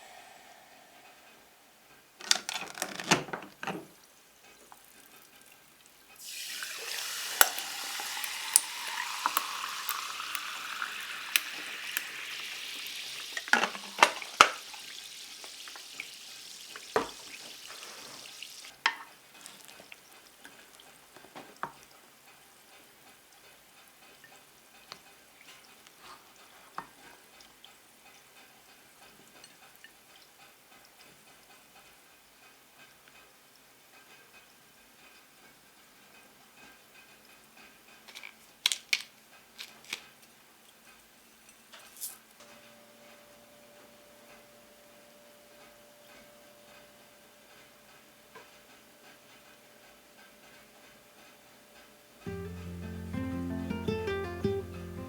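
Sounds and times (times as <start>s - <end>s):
food sizzling in a frying pan: 0.0s - 2.8s, 6.2s - 21.9s.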